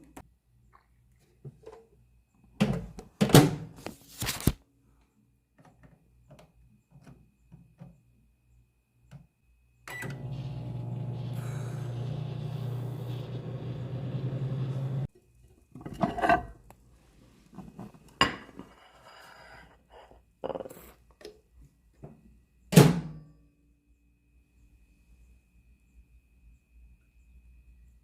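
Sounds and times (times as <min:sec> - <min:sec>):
electric appliance hum: 0:09.9 - 0:15.1.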